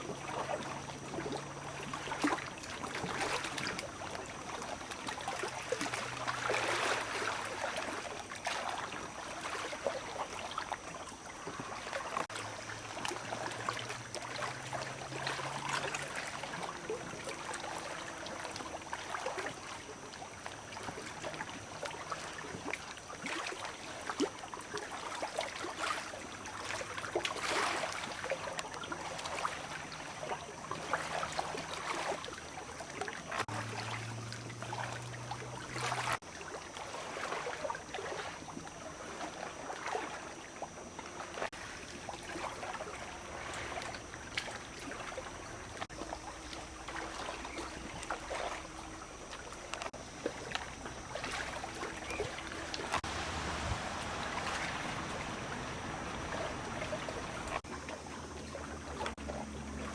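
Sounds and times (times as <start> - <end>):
stream water noise: 0.0 - 59.9
faint low hum: 27.6 - 59.9.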